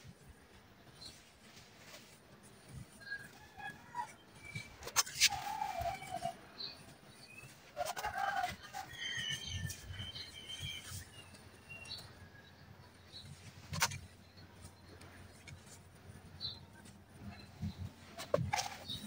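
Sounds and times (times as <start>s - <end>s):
birds chirping: 0.3s - 19.0s.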